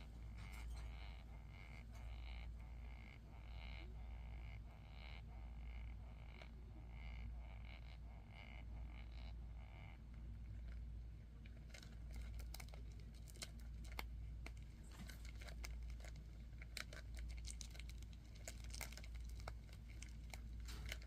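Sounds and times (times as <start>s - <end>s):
beetles scratching and clicking: 11.5s - 21.0s.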